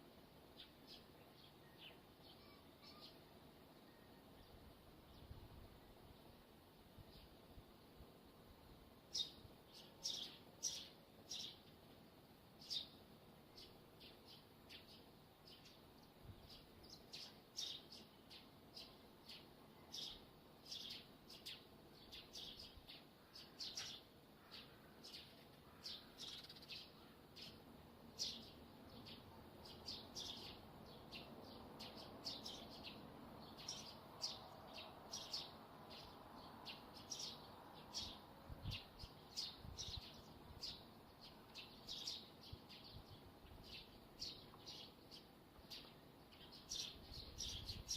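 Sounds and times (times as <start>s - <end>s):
faint wind rush: 38.3s - 39.0s.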